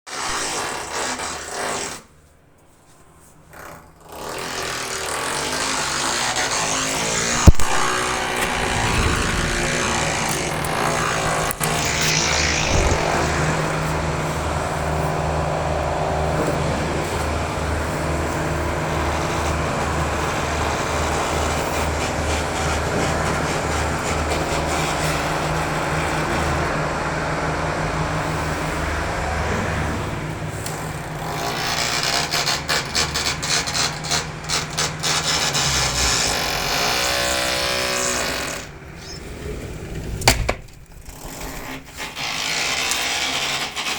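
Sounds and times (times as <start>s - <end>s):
fast stuttering rattle: 5.3s - 15.6s
machinery droning with low throb: 5.6s - 32.4s.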